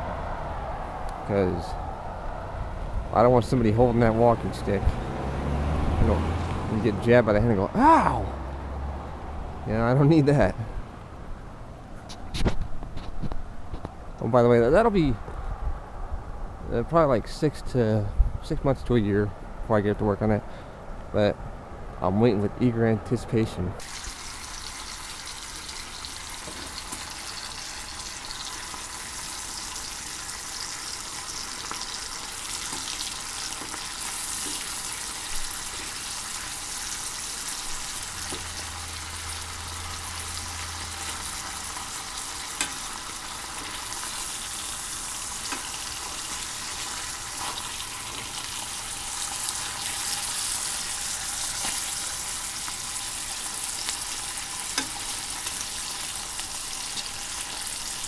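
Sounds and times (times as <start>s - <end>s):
food sizzling in a frying pan: 23.8s - 58.0s
utensil clicking against pan: 42.6s - 42.9s.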